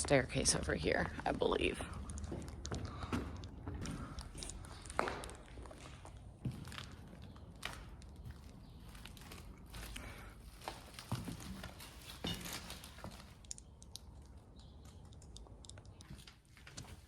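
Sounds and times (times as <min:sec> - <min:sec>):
footsteps walking: 0:00.0 - 0:13.4.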